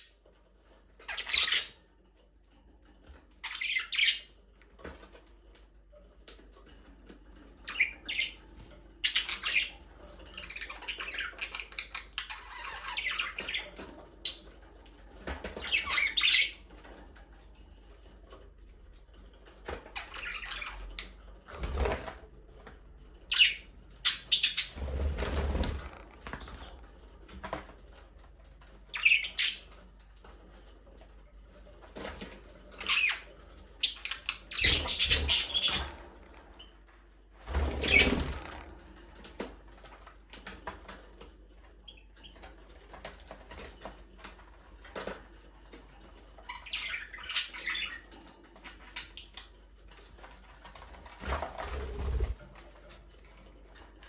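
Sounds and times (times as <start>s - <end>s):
wings flapping: 21.5s - 22.2s, 24.0s - 27.8s, 37.4s - 38.9s, 50.7s - 52.6s
budgerigars chirping: 33.8s - 35.9s.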